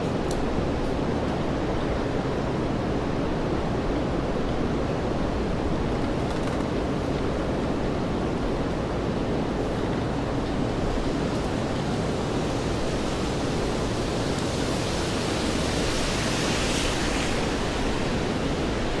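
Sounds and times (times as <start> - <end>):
rain on wet street: 5.3 - 19.0.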